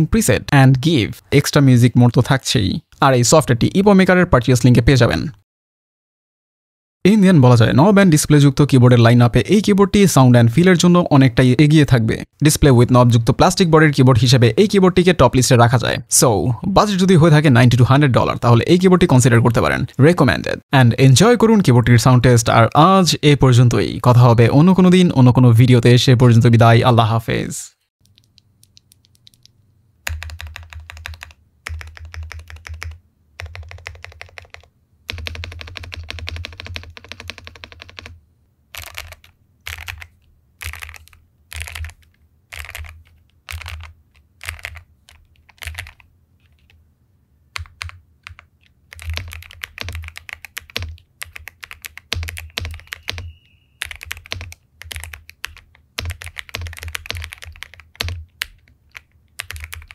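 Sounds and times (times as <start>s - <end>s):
mechanical keyboard typing: 28.0s - 46.8s, 47.6s - 59.9s.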